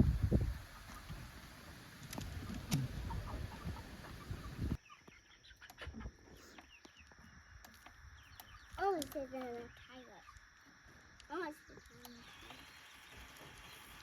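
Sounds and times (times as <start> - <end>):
chickens clucking: 0.3 - 7.4.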